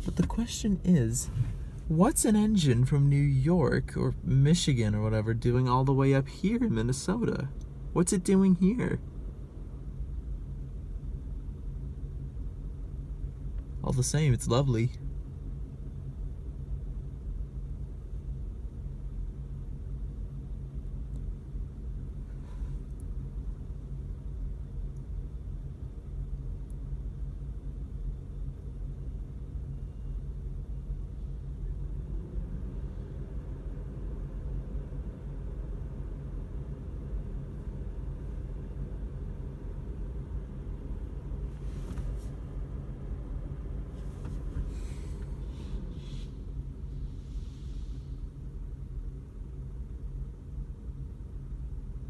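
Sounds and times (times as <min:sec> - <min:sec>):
diesel locomotive engine rumbling: 0:00.0 - 0:52.0
brief hiss: 0:44.0 - 0:48.2.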